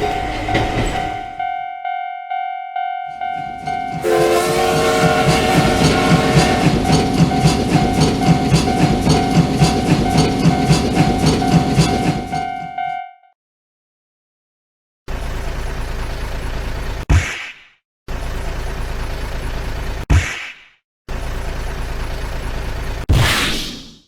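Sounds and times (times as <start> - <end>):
train wheels clacking over rail joints: 0.0 - 1.4, 3.2 - 12.8
crossing warning bell ringing: 0.0 - 13.2
train horn: 3.1 - 8.4.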